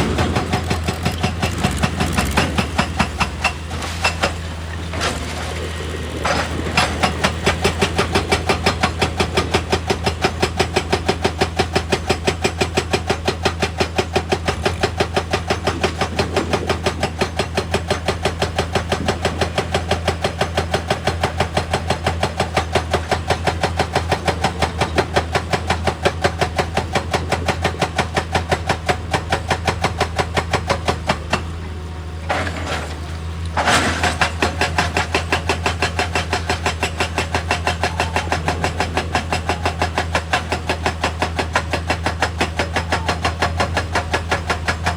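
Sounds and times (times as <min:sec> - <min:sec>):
excavator engine hum: 0:00.0 - 0:44.9.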